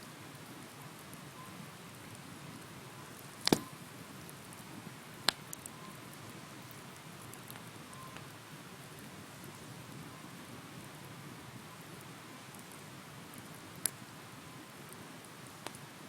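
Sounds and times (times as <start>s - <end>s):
bonfire crackling: 0.0s - 16.0s
burning wood popping: 2.0s - 8.3s.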